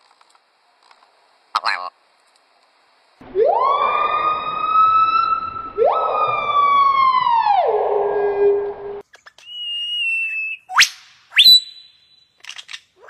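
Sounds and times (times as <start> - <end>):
siren-like wailing tone: 3.2 - 9.0.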